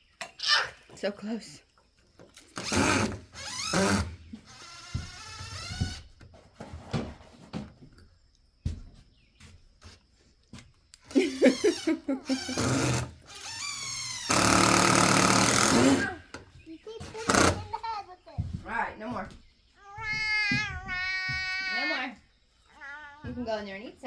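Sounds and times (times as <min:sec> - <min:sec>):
children squealing and laughing: 0:11.1 - 0:14.4, 0:15.7 - 0:18.4, 0:19.7 - 0:23.4.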